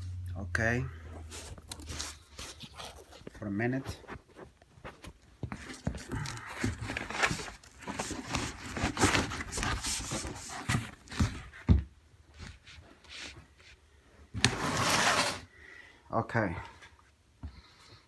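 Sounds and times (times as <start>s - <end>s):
cardboard packaging rustling: 1.1s - 11.7s, 14.4s - 15.5s.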